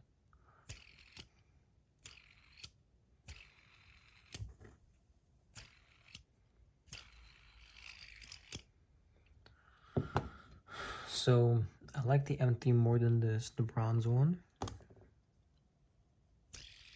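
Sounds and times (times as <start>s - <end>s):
fidget spinner click and whir: 0.6s - 4.6s, 5.5s - 8.8s, 16.5s - 16.9s.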